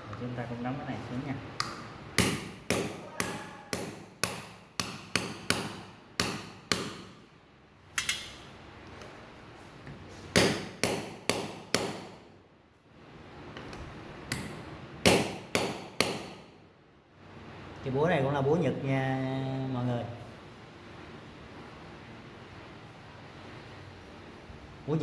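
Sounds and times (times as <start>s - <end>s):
hammer blows ringing on metal: 1.6s - 7.1s, 10.4s - 12.2s, 15.0s - 16.5s.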